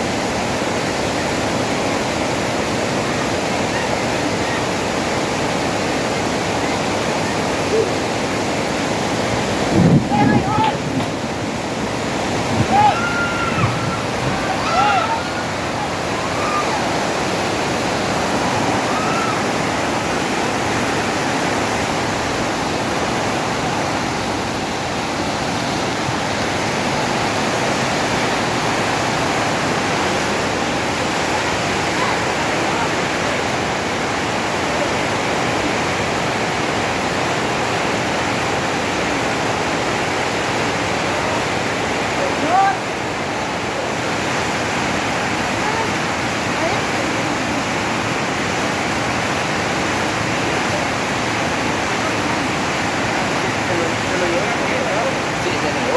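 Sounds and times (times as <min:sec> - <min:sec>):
floodwater rushing: 0:00.0 - 0:55.9.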